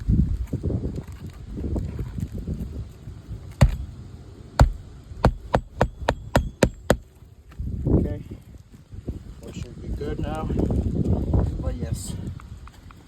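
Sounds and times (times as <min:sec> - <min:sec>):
hammer striking roofing nails: 0:03.6 - 0:03.8, 0:04.6 - 0:07.1.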